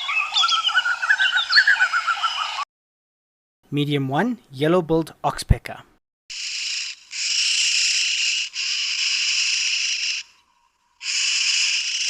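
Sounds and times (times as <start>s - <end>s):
bird rasping hisses: 6.3s - 10.4s, 11.0s - 12.0s.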